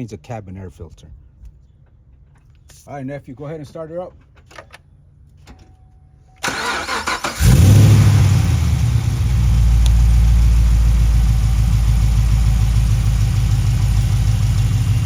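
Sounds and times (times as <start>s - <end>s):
car engine cranking and idling: 6.4s - 15.0s.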